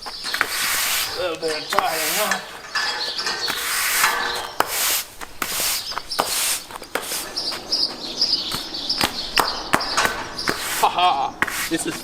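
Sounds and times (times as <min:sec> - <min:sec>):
small birds chirping: 0:00.0 - 0:12.0
broom sweeping: 0:00.3 - 0:07.8, 0:10.4 - 0:12.0.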